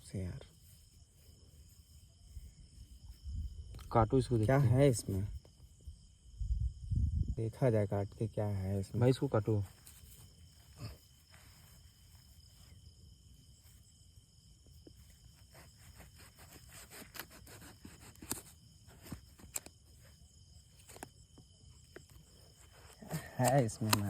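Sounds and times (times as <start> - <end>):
crickets chirring: 0.0 - 24.0
knife clicking and scraping pumpkin: 15.5 - 19.7, 22.7 - 24.0.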